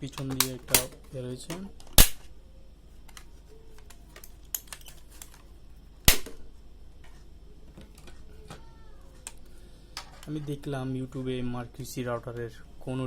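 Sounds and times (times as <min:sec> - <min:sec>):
plastic clips snapping: 0:00.1 - 0:02.3.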